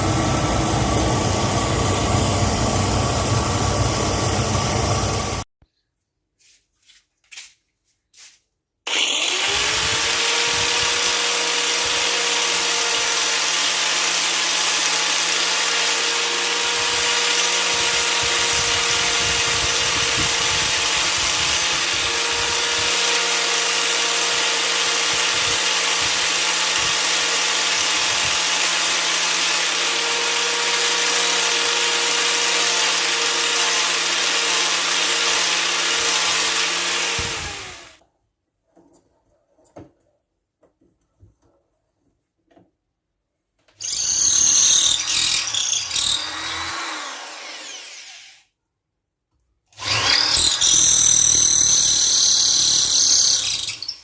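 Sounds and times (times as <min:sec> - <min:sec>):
power tool whining: 0:00.0 - 0:05.5, 0:08.9 - 0:38.0, 0:43.8 - 0:48.5, 0:49.8 - 0:54.0.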